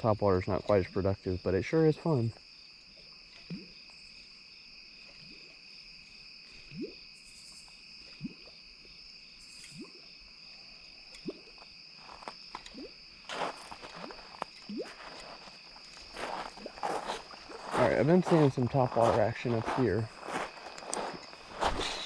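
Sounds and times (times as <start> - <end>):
insects trilling: 0.0 - 22.0
splashing: 12.6 - 22.0.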